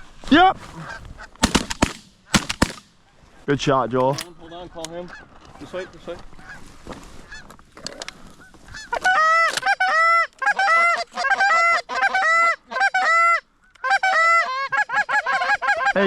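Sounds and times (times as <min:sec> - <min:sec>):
goose call honks: 0:08.8 - 0:16.0.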